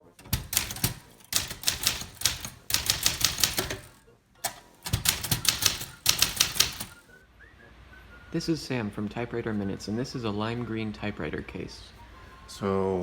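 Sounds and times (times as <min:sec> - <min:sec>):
manual typewriter typing: 0:00.0 - 0:07.1.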